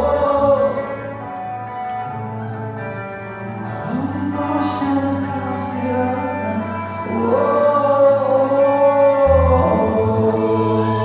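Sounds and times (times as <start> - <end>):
live pop-rock band: 0.0 - 11.0
person singing long note: 6.6 - 11.0
deep bass note: 9.2 - 11.0.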